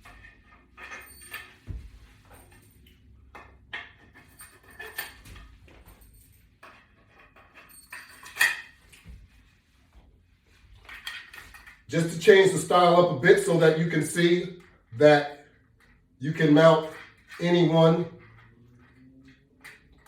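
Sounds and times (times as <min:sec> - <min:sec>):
metal hardware clinking and knocking: 0:00.0 - 0:09.0.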